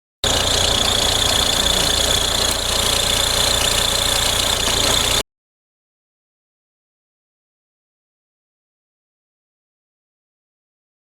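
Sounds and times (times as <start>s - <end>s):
diesel engine idling: 0.2s - 5.2s
steady high-pitched noise: 0.2s - 5.2s.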